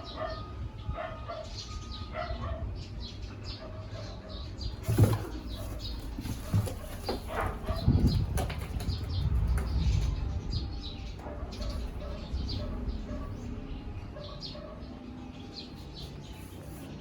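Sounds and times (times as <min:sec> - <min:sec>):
cardboard box rustling: 0:04.7 - 0:09.0
cats thumping in box: 0:04.7 - 0:10.2.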